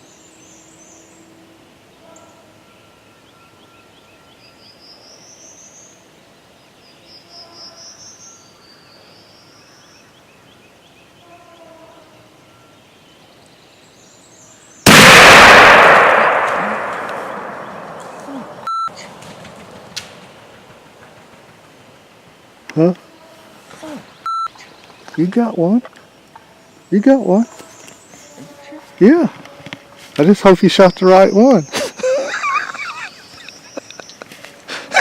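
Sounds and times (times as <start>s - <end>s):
songbirds calling: 0.0s - 35.0s
shotgun blast: 14.9s - 18.7s.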